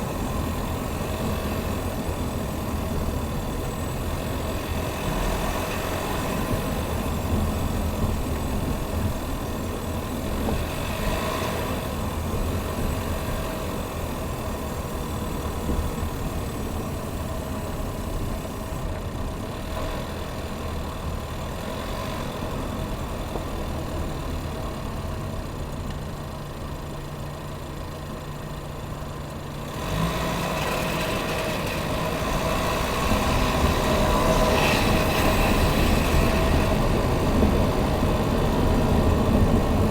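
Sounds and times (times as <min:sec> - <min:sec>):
car engine humming: 0:22.5 - 0:39.9.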